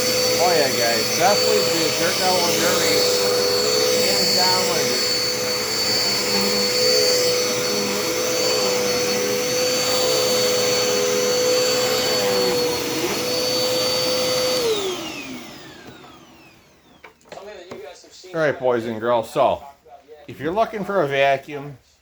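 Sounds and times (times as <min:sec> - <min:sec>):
vacuum cleaner motor whine: 0:00.0 - 0:17.5.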